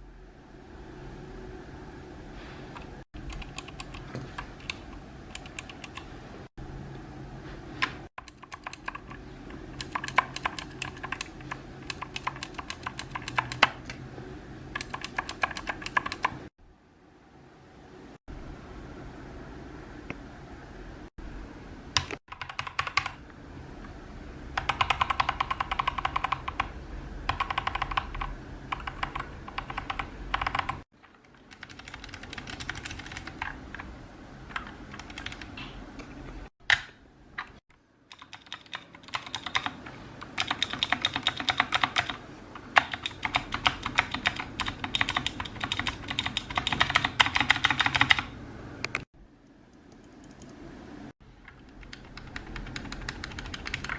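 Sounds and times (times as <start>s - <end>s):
mechanical keyboard typing: 2.8s - 6.1s, 7.8s - 14.0s, 14.7s - 16.5s, 22.0s - 23.2s, 24.6s - 33.9s, 34.5s - 35.6s, 38.1s - 49.1s, 51.4s - 53.9s.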